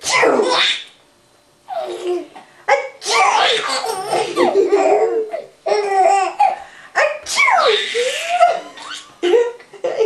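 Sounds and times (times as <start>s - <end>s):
young child giggling: 3.6s - 5.5s.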